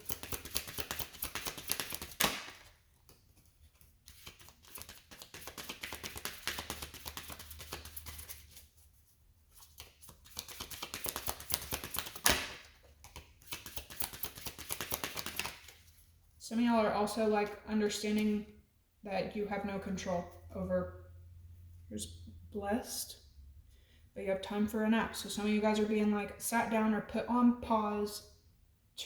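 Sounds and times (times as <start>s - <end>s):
cards being shuffled: 0.0s - 8.8s, 9.5s - 16.0s.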